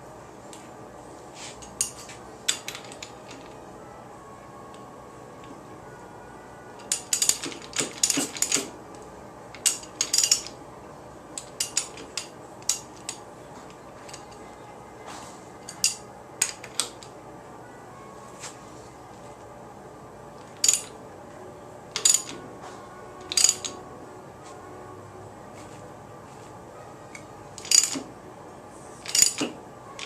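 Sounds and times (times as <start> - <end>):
metal tools clinking: 1.6 - 3.6, 6.8 - 8.7, 9.6 - 10.6, 11.4 - 13.2, 14.0 - 14.5, 15.6 - 17.1, 20.4 - 20.9, 21.9 - 22.4, 23.2 - 23.8, 27.6 - 28.1, 29.0 - 29.5.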